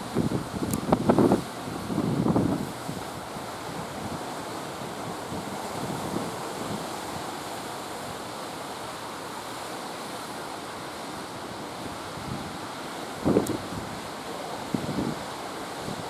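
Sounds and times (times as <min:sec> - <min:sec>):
wind buffeting microphone: 0:00.0 - 0:06.9.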